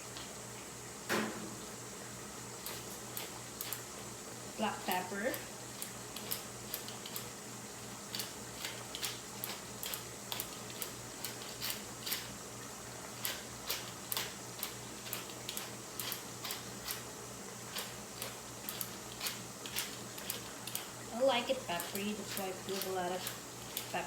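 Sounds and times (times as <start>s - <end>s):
low steady hum: 0.0s - 24.0s
pepper mill grinding clicks: 8.1s - 12.3s, 13.2s - 17.0s, 17.7s - 20.9s.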